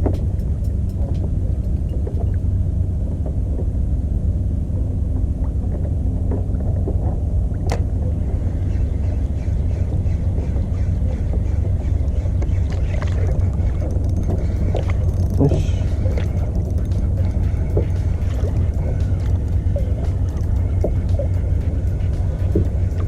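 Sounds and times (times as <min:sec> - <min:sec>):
sharp tick: 0:00.0 - 0:02.4, 0:13.8 - 0:23.0
outboard motor running: 0:00.0 - 0:23.0.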